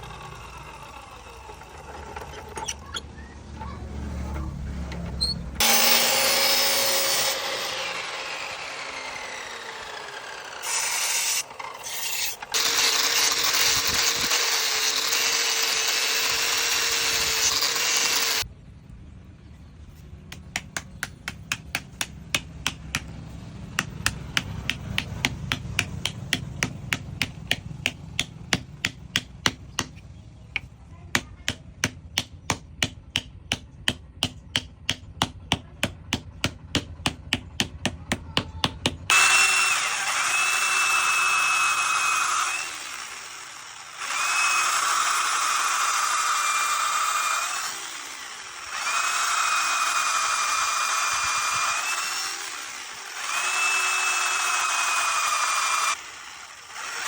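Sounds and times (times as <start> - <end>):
electric power tool whining: 0.0 - 3.1, 4.1 - 18.5, 39.1 - 57.0
sharp regular taps: 20.3 - 39.1.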